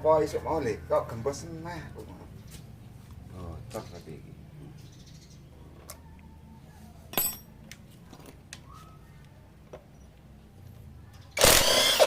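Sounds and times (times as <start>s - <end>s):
metallic clink: 7.1s - 7.6s
power tool running: 11.4s - 12.0s.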